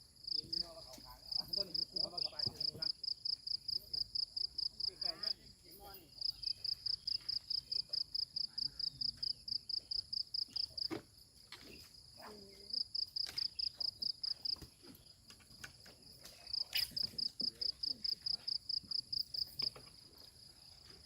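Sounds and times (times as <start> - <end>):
cricket chirping: 0.0 - 21.0.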